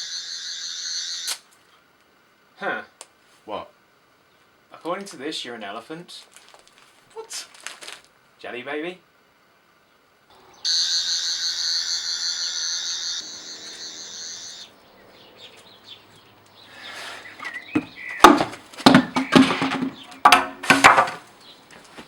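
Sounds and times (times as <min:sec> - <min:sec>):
warbling electronic whine: 0:10.4 - 0:14.8
loud knocks and clatter: 0:17.7 - 0:21.3.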